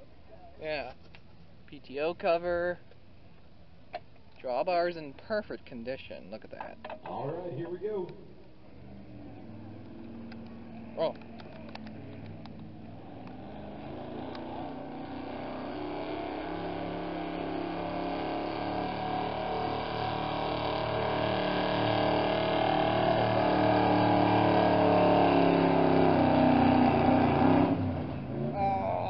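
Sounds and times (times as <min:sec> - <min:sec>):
vehicle engine under full load: 0:08.6 - 0:29.0.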